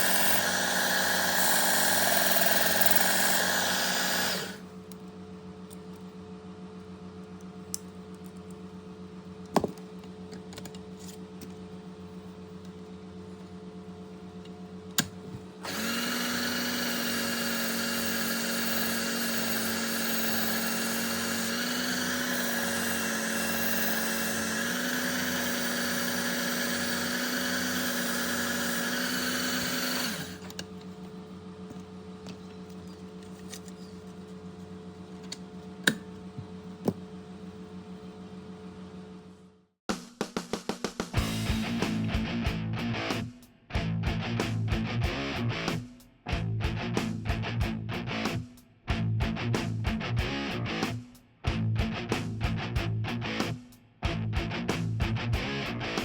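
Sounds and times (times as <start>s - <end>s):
blade grinding on belt: 0.0s - 4.6s, 15.6s - 30.5s
sharpener motor hum: 0.0s - 5.0s, 14.9s - 34.2s.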